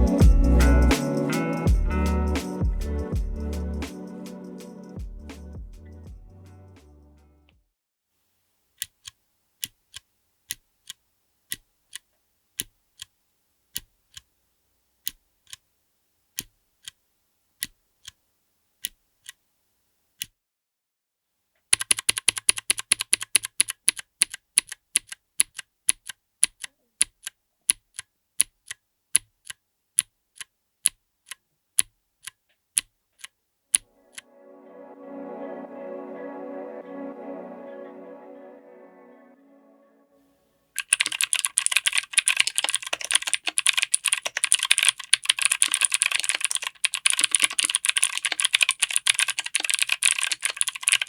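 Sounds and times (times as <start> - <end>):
clicky keyboard keystrokes: 21.8 - 30.1, 40.8 - 51.0.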